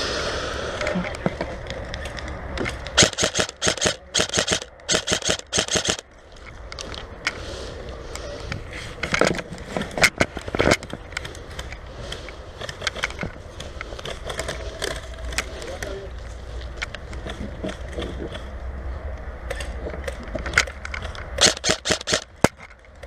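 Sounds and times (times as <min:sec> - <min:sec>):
airsoft guns firing: 0:03.0 - 0:06.0, 0:21.4 - 0:22.5.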